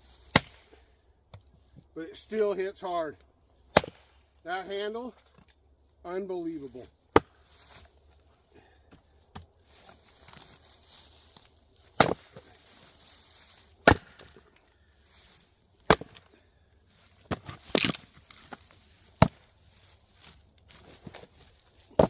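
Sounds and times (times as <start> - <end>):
axe chopping firewood: 0.2 - 1.5, 3.7 - 4.3, 7.0 - 7.9, 8.9 - 10.5, 11.8 - 12.6, 13.7 - 14.6, 15.8 - 16.4, 17.2 - 19.5.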